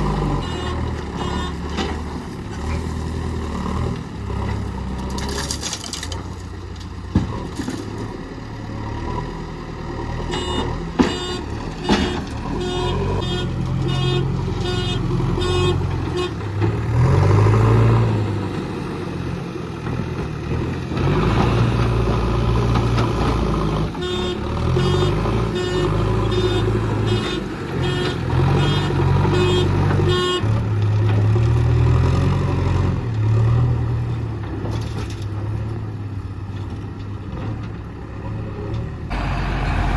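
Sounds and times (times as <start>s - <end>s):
diesel engine revving under load: 0.0s - 5.5s, 6.9s - 39.9s.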